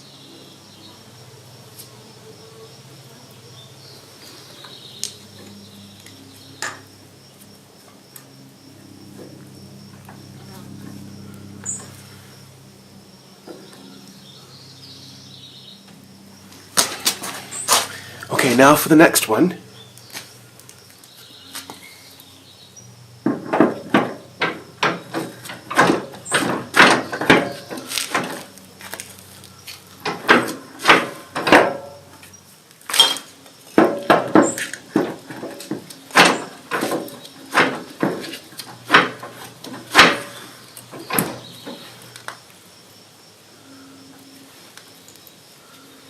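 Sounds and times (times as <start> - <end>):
metal knocks and clanks: 23.2 - 28.5, 30.0 - 32.1, 32.9 - 41.8.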